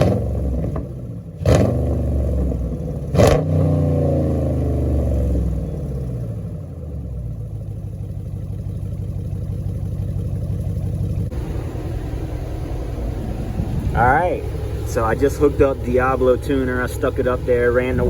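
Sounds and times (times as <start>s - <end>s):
engine idling after blip: 5.4s - 18.0s.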